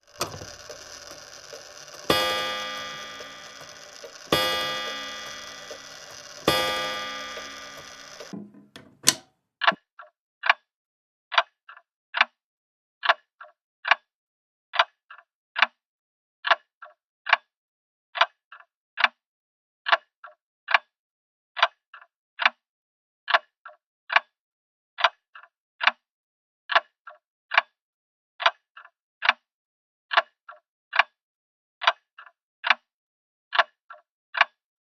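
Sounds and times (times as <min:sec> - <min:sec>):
clock pendulum ticking: 0:00.0 - 0:09.2
grandfather clock bell striking: 0:00.1 - 0:09.1.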